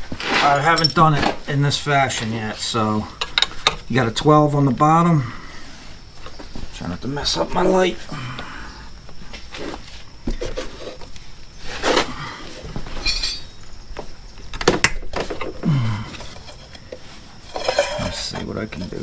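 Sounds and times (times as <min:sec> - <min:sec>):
metal tools clinking and knocking: 0:00.5 - 0:01.4, 0:03.1 - 0:03.9, 0:12.8 - 0:13.7, 0:17.4 - 0:18.6.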